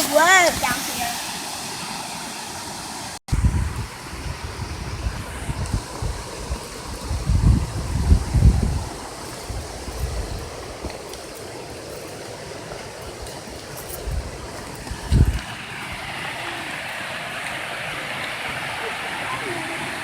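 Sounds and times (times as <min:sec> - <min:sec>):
waterfall rushing: 0:00.0 - 0:20.0.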